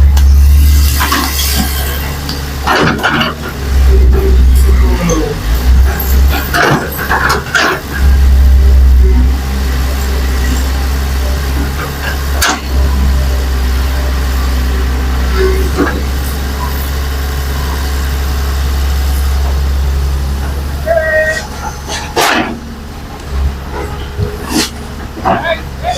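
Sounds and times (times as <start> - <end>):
heavy diesel engine rumbling: 0.0 - 25.9.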